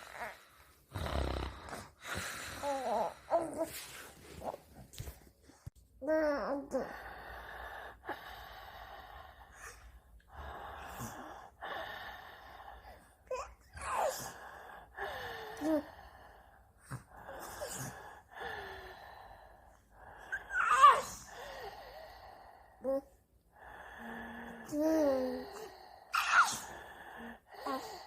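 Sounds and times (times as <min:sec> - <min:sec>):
baby making snore-like sounds: 0:00.0 - 0:01.9.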